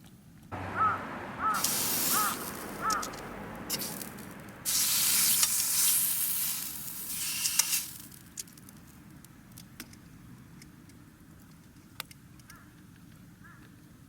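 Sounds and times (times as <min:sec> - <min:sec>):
meat sizzling in a hot pan: 0:04.7 - 0:08.0.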